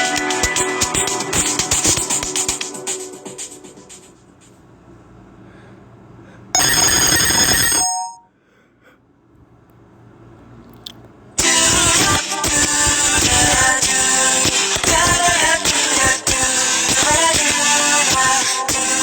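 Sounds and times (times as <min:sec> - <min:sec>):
phone ringtone tunes: 0:06.6 - 0:08.3
short bright ringtone: 0:06.6 - 0:08.3.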